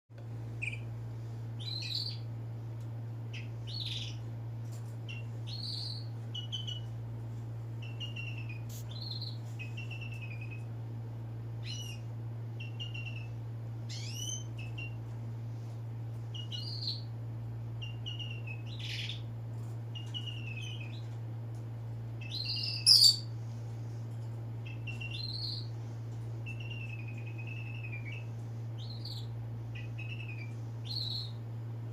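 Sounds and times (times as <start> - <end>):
steady low hum: 0.2 - 31.9
bird chirping and whistling: 0.6 - 0.8, 1.6 - 2.2, 5.1 - 6.8, 7.8 - 10.6, 11.6 - 12.0, 12.6 - 15.0, 16.3 - 17.1, 17.8 - 19.2, 20.0 - 21.0, 22.2 - 23.3, 24.7 - 25.7, 26.4 - 31.4.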